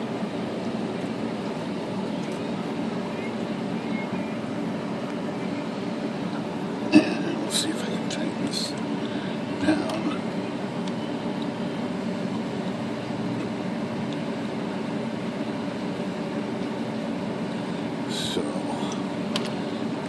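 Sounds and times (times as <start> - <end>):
background hum and hiss: 0.0 - 20.0.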